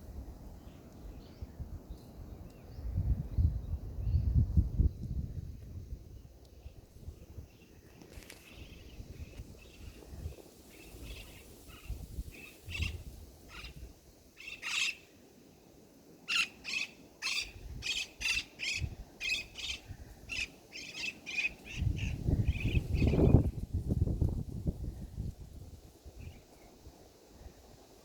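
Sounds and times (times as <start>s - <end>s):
bird calling: 16.3s - 23.3s.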